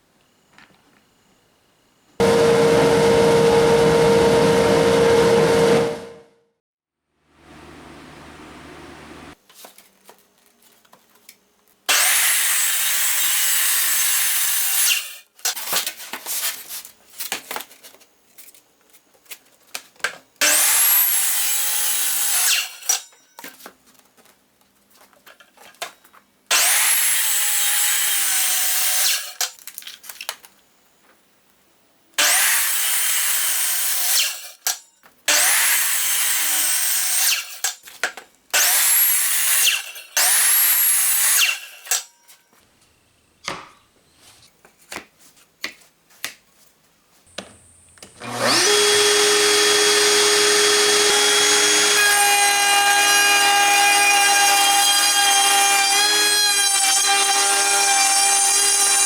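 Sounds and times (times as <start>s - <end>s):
circular saw cutting plywood: 2.2s - 6.2s, 38.6s - 42.1s, 48.1s - 59.0s.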